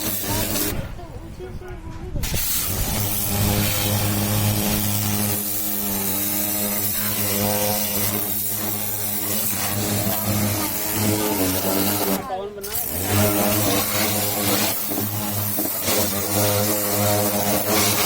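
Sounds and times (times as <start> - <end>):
pressure washer motor hum: 0.0 - 0.9, 2.2 - 18.0
water jet hissing: 0.0 - 1.0, 2.2 - 18.0.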